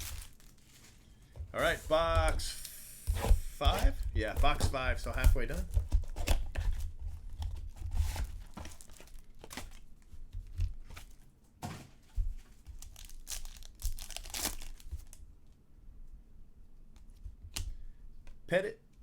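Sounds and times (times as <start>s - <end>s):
plastic wrapping tearing and crinkling: 0.0s - 11.2s, 12.7s - 15.2s.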